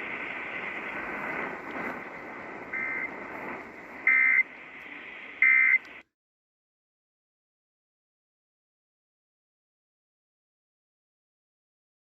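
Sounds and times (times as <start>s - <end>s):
radio hiss: 0.0s - 6.0s
warbling digital data tones: 2.7s - 3.1s.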